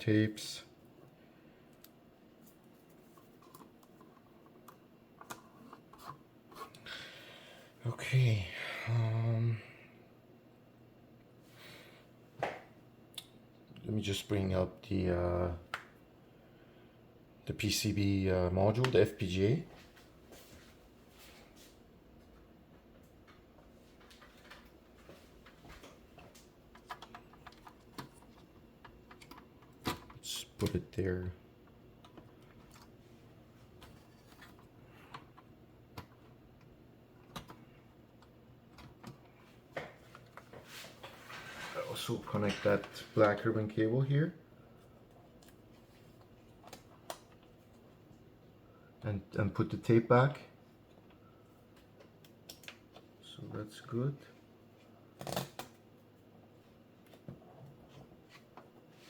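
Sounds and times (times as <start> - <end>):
hands clicking and tapping parts: 25.4 - 30.8, 33.8 - 37.6, 50.9 - 53.1.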